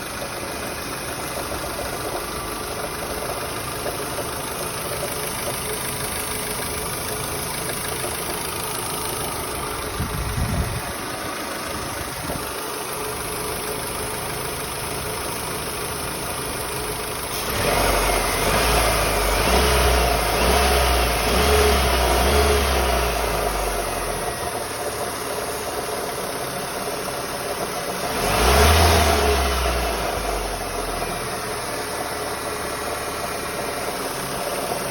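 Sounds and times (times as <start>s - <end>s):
car engine idling: 0.0s - 34.9s
engine knocking: 0.0s - 34.9s
engine revving: 17.3s - 24.4s, 27.9s - 31.3s.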